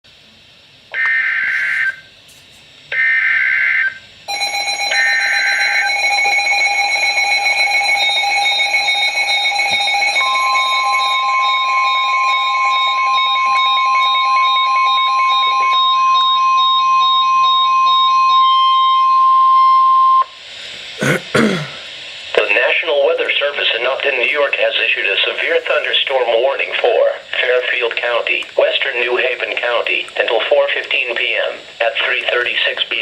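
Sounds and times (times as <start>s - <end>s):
loud multi-tone radio alarm: 0.9s - 2.1s, 2.9s - 20.4s
steady warning alarm tone: 0.9s - 2.2s, 2.9s - 20.5s
screeching digital data bursts: 1.0s - 2.1s, 2.9s - 6.7s, 10.2s - 18.4s.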